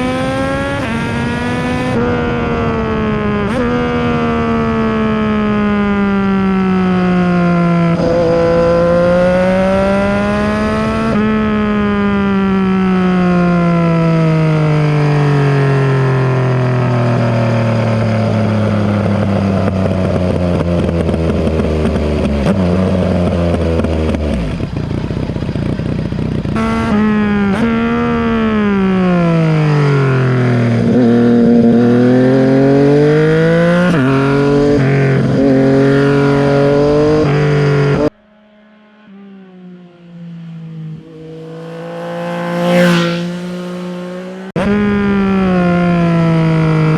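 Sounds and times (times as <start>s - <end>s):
motorcycle engine revving: 0.0s - 46.9s.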